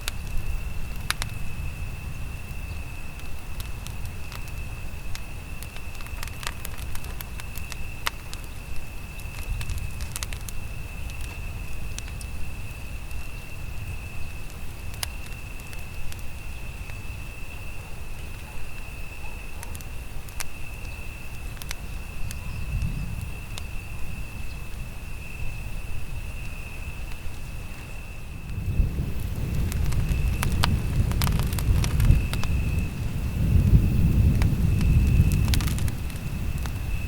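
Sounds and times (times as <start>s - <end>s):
campfire crackling and popping: 0.0s - 37.0s
high-pitched insect trill: 0.0s - 37.0s.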